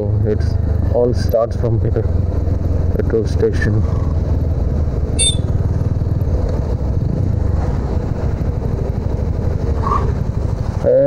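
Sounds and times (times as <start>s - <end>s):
motorcycle engine running: 0.0s - 11.0s
brief high chirp: 5.2s - 5.5s.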